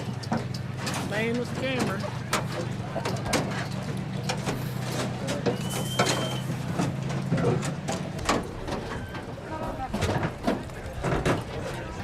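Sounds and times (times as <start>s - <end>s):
high squeak: 5.5s - 6.5s.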